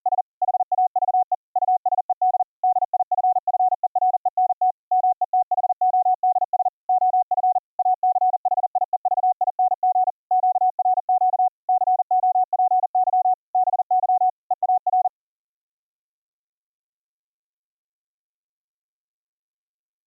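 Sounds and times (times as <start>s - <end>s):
morse code beeps: 0.0s - 15.1s.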